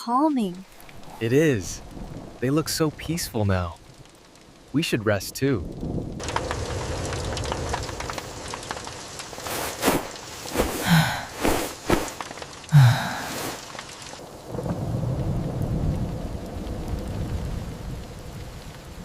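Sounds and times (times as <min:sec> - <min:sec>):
heavy rain: 0:00.0 - 0:19.0
thunder rumbling: 0:00.8 - 0:04.7, 0:05.6 - 0:19.0
sharp cracks: 0:05.8 - 0:14.2.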